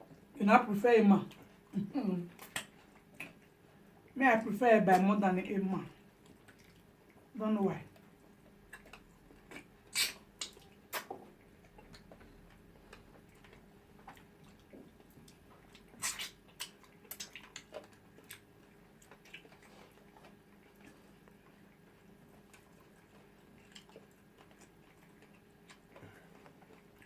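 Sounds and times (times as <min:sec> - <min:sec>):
wet lip smacks of eating: 0:02.3 - 0:03.6, 0:06.2 - 0:07.2, 0:08.7 - 0:27.0.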